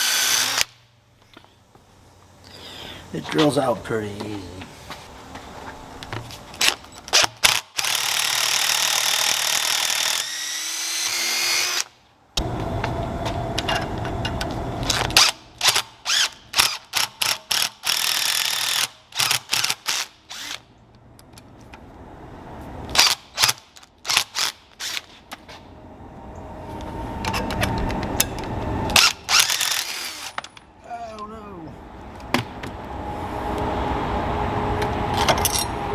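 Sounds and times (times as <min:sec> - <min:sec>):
electric drill drilling rivet: 0:00.0 - 0:00.8, 0:07.0 - 0:11.9, 0:14.9 - 0:20.6, 0:22.9 - 0:25.1, 0:28.9 - 0:30.4.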